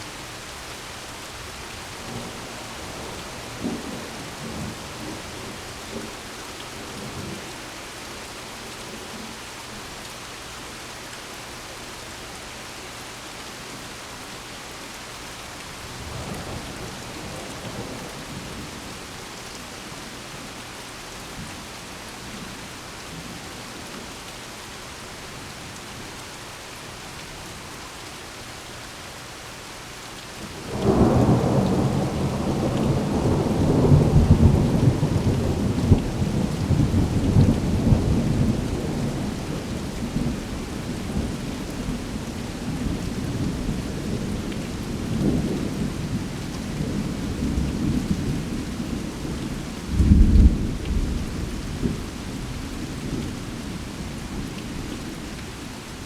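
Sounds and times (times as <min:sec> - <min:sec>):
steady rain falling: 0:00.0 - 0:56.0
distant thunder rumble: 0:49.9 - 0:52.2.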